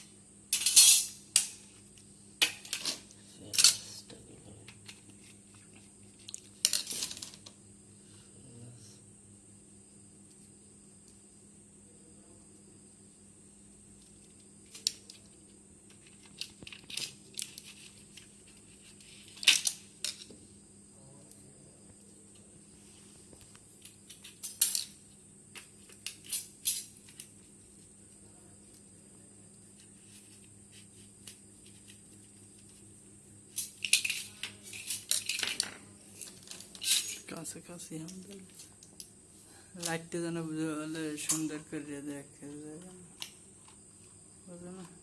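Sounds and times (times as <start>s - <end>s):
small metal objects clattering: 0.5s - 1.5s, 6.3s - 7.5s, 19.0s - 20.3s, 24.1s - 25.0s, 33.5s - 37.3s.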